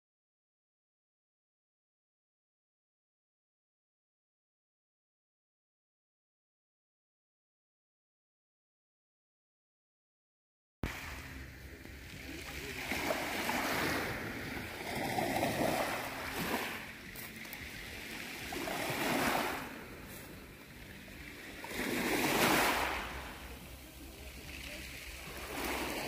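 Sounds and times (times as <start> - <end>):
sea waves washing in: 10.8 - 26.0.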